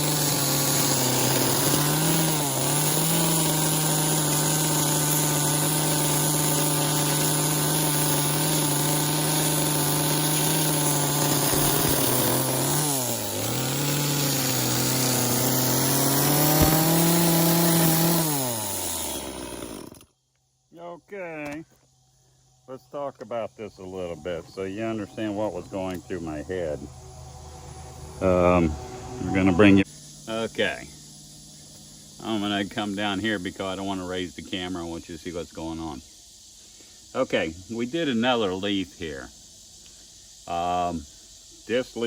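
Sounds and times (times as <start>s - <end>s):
chainsaw cutting wood: 0.0s - 20.2s.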